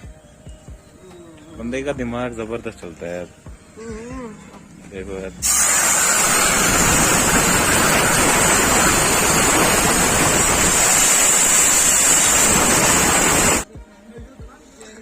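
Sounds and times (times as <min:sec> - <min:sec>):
air blow gun hissing: 0:05.4 - 0:13.7.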